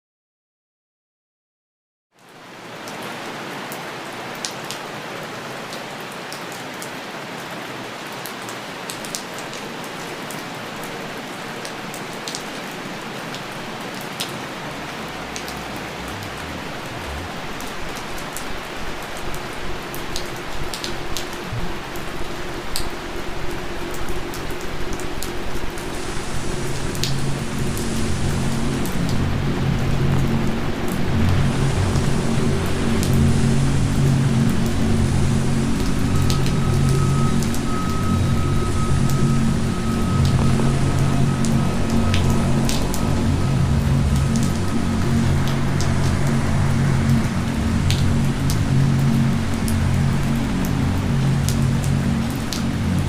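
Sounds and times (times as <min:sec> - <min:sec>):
steady rain falling: 0:02.2 - 0:53.0
low rumble: 0:13.0 - 0:53.0
sharp drip ticks: 0:30.9 - 0:53.0.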